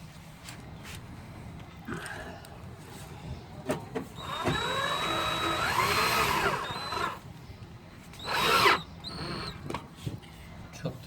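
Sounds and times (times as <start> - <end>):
power drill driving a screw: 4.2 - 7.2, 8.2 - 9.6.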